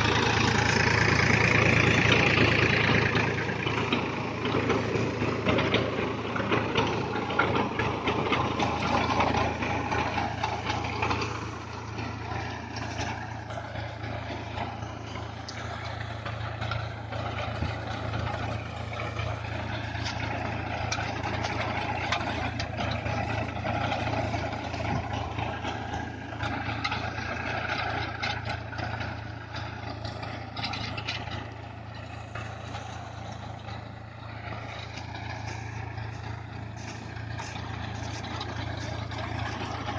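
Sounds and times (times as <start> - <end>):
tractor engine running: 0.0 - 39.9
rattling and clattering: 0.1 - 39.9.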